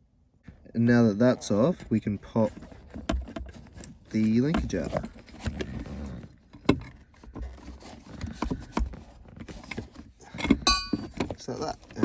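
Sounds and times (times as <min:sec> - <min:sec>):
metallic ping: 0:10.7 - 0:11.1.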